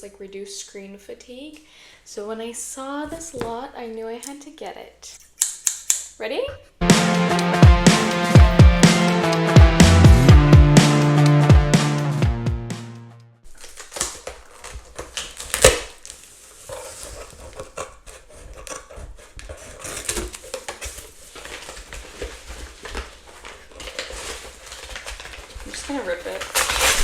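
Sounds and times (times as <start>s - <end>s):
music: 6.8s - 13.4s
package being opened: 13.5s - 27.0s.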